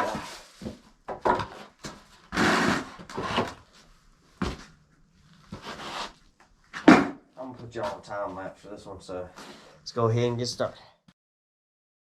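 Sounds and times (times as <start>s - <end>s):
wooden board scraping: 0.0s - 3.6s, 5.5s - 7.2s.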